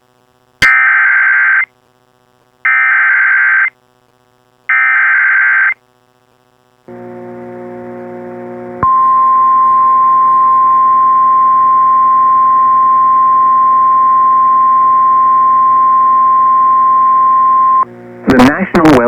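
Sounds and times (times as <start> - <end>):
low buzzing tone: 6.9 - 18.8
person speaking warning: 18.3 - 19.0.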